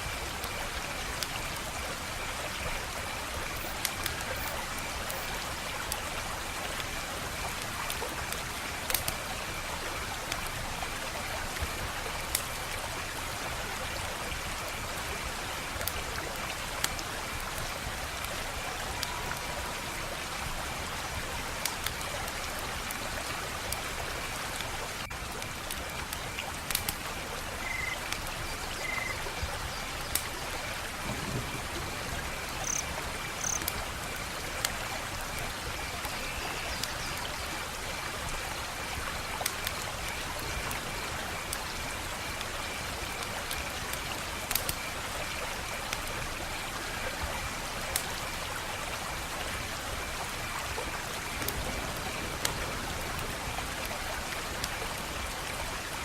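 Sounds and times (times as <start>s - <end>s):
wood fire crackling: 0.2s - 13.2s, 14.1s - 28.4s, 29.2s - 35.6s, 37.6s - 46.6s.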